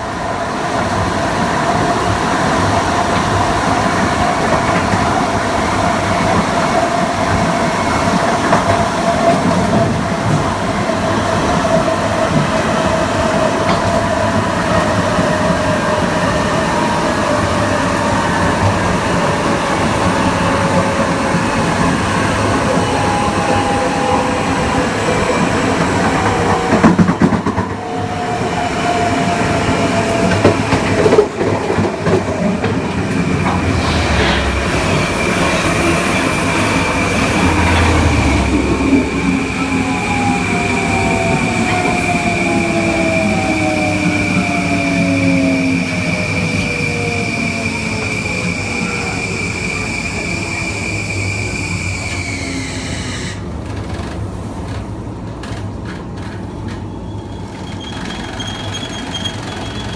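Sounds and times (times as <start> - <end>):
train wheels on rails: 0.0 - 59.9.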